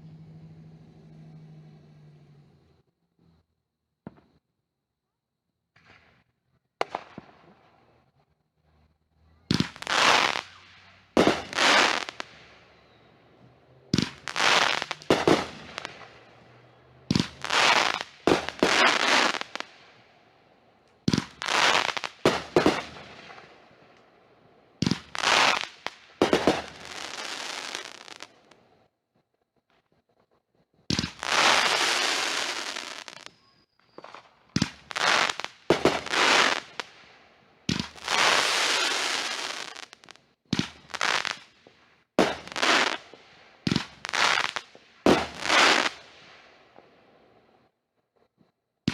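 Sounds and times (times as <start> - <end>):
fireworks banging and crackling: 5.7 - 8.0, 9.5 - 20.1, 20.9 - 24.1, 24.8 - 28.6, 30.9 - 47.0.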